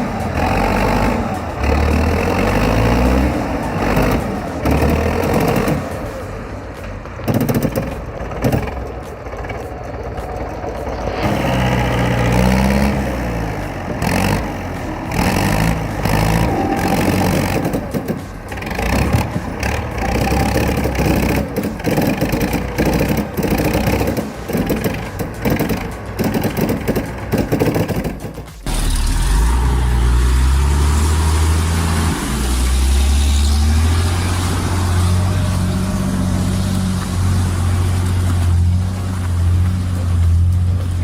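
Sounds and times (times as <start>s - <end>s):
knocks and clatter: 0.0s - 29.6s
heavy vehicle engine revving: 0.0s - 41.0s.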